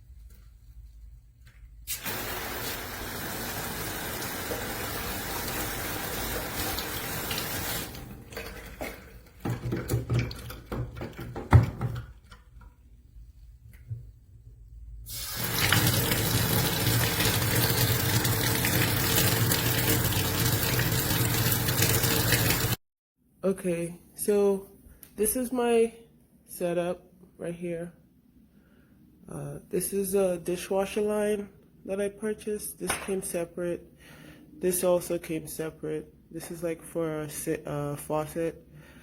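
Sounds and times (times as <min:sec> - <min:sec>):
water running from faucet sprayer: 0:01.9 - 0:08.2, 0:15.1 - 0:22.8.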